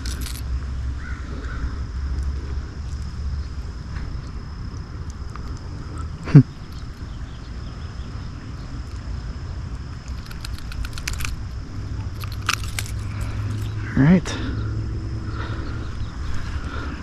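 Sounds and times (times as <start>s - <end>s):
handling rustle: 0.0s - 0.4s
rapid small clicks: 0.0s - 0.4s, 10.0s - 11.4s, 12.1s - 13.7s.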